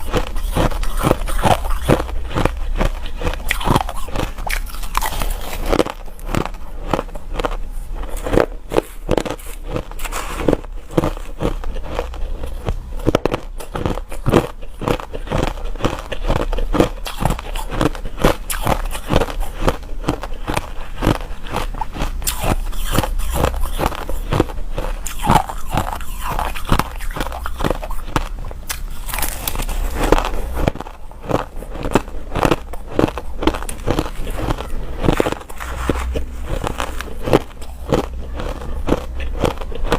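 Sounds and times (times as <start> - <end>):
person chewing ice crunches: 0.0 - 39.9.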